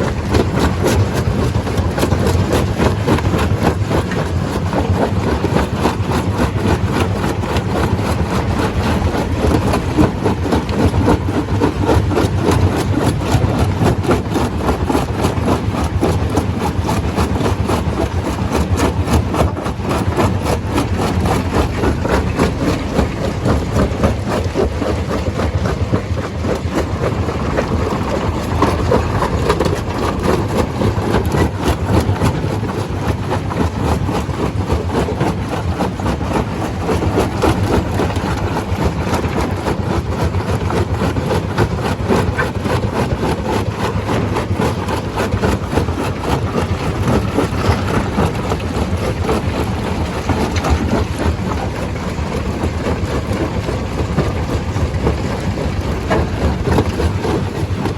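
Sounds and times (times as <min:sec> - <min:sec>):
stone crusher running: 0:00.0 - 0:57.9
rattle of rock knocks: 0:46.6 - 0:57.9.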